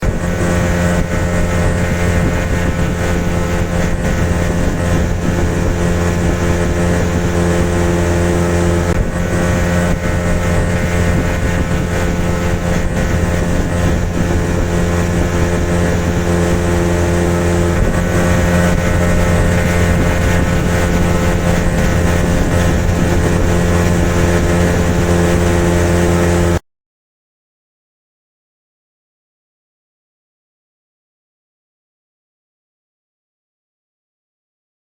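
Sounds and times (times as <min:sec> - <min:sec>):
motorboat engine running: 0:00.0 - 0:26.6.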